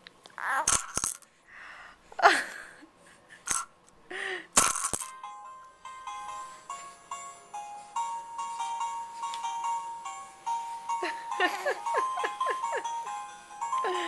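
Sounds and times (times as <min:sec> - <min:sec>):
baby squealing and babbling: 0:00.4 - 0:00.8
toy being knocked: 0:04.6 - 0:05.2.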